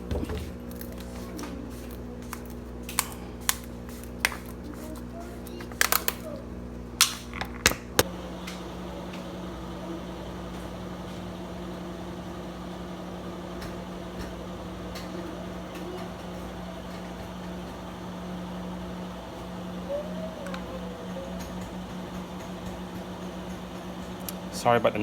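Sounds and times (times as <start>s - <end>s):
washing machine motor hum: 0.0s - 25.0s.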